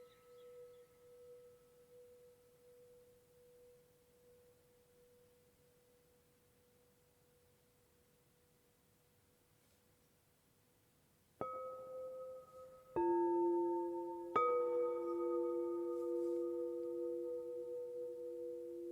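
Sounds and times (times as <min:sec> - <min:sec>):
singing bowl ringing: 0:11.4 - 0:18.9.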